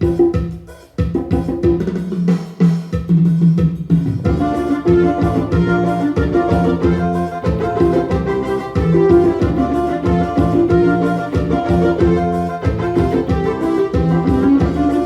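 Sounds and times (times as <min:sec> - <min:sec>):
steady drum beat: 0:00.0 - 0:15.0
electronic keyboard melody: 0:04.3 - 0:15.0.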